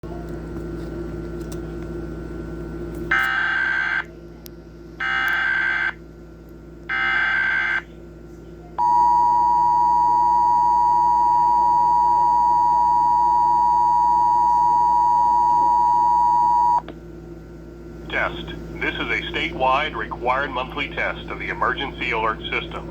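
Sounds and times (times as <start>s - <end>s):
two-tone attention signal: 8.8s - 16.8s.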